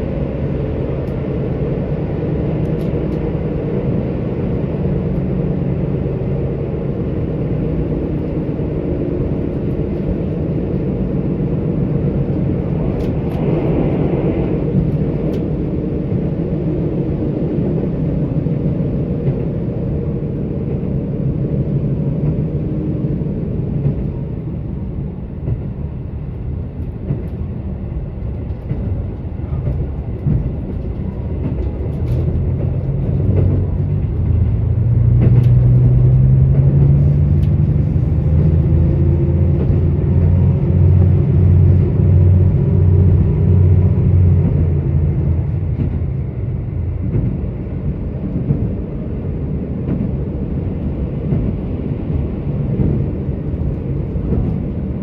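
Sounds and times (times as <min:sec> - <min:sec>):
diesel engine drone: 0:00.0 - 0:55.0
wheels rumbling on rail: 0:00.0 - 0:55.0.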